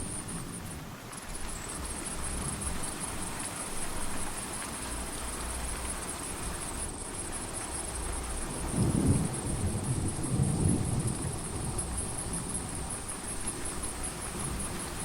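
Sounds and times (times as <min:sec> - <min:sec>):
rain: 0:00.0 - 0:15.0
distant thunder rumbling: 0:08.5 - 0:15.0.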